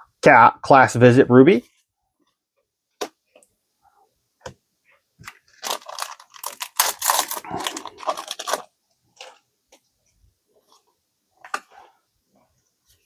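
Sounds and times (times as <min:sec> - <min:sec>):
foil pack tearing and crinkling: 0:05.3 - 0:09.4.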